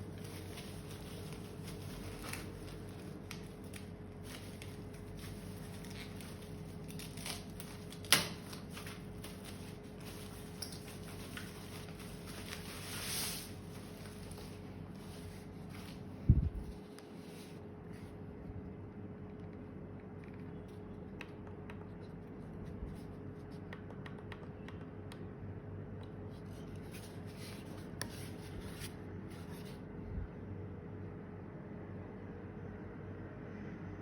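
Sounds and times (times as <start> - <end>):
packaging rustling: 0.0 - 16.1.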